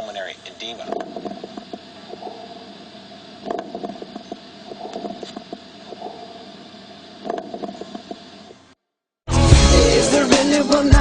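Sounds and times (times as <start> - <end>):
steady hum: 0.0 - 8.8
bubbling lung crackles: 0.1 - 8.7.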